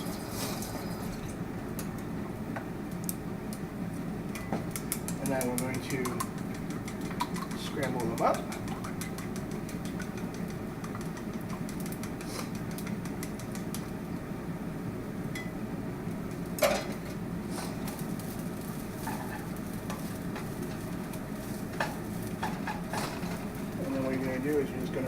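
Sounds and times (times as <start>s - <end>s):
steady low hum: 0.0s - 25.0s
whisk clicking against bowl: 4.7s - 13.9s
scattered taps: 4.8s - 13.8s.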